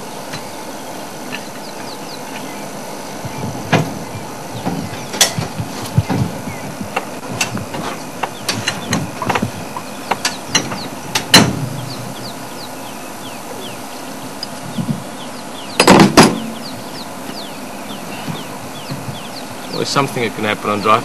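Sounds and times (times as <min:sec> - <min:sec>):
loud metal clank: 0:10.2 - 0:12.0, 0:15.8 - 0:16.7.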